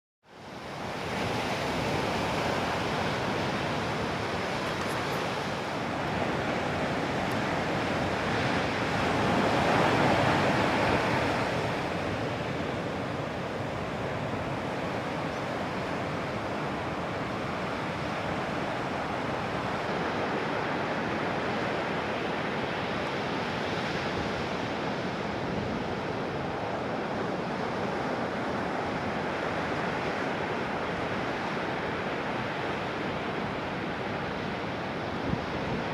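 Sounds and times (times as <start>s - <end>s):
breaking waves: 1.0s - 25.2s.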